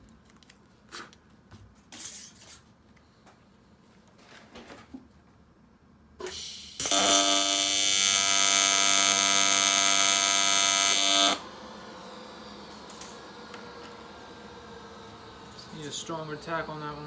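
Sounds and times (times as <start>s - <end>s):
welding arc buzzing: 6.2s - 17.0s
arc starting hiss: 8.6s - 17.0s.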